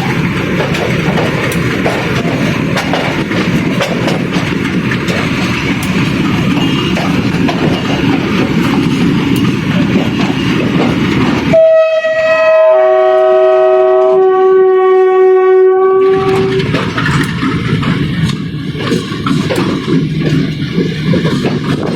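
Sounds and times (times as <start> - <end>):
train wheels rumbling on rail: 0.0 - 21.9
locomotive horn chord: 11.5 - 16.7.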